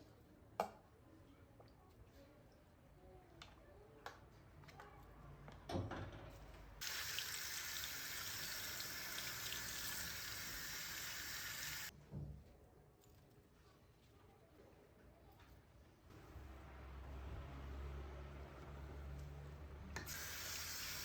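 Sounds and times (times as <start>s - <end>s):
water running into sink: 6.8s - 11.9s, 20.0s - 21.0s.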